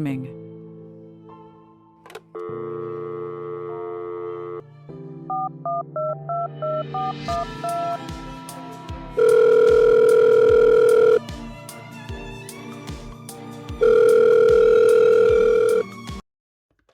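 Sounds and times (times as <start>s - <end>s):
phone ringing tone: 2.4s - 4.6s, 5.3s - 8.0s, 9.2s - 11.2s, 13.8s - 15.9s
music with low pulse: 5.3s - 16.0s
telephone dialing beeps: 9.2s - 11.2s, 13.8s - 15.8s.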